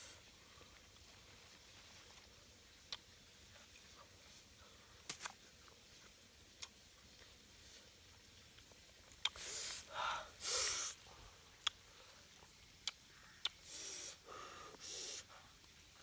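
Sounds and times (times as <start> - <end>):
crisp mouth clicks: 2.9 - 3.1, 12.8 - 14.0
sharp breaths or sniffs: 9.3 - 11.1, 13.6 - 15.5.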